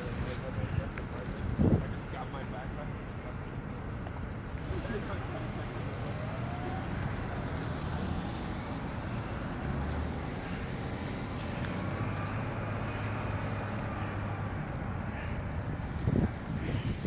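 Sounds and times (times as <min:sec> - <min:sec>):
hum of street traffic: 0:00.0 - 0:17.0.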